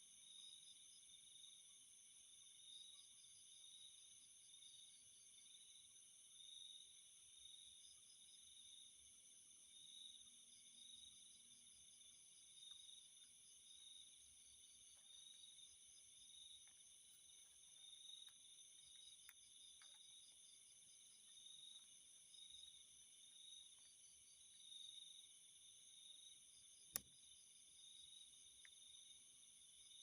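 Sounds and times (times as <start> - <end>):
rapid pulsing insect chirp: 0.0 - 30.0
crickets trilling: 10.8 - 30.0.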